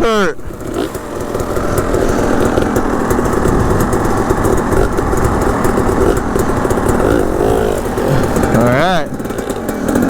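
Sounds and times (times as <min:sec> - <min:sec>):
dirt bike engine idling: 0:00.0 - 0:10.0.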